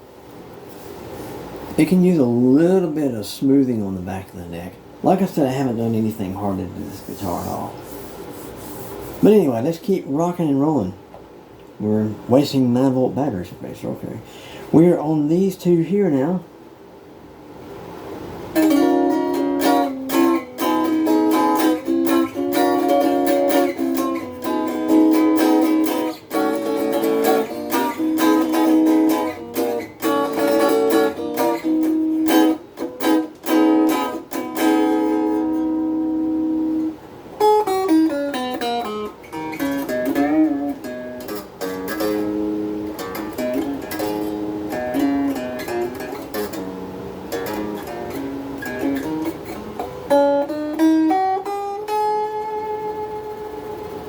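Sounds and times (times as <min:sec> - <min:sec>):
electric guitar chords: 0:18.4 - 0:54.0
electric guitar riffs with slides: 0:18.6 - 0:53.9.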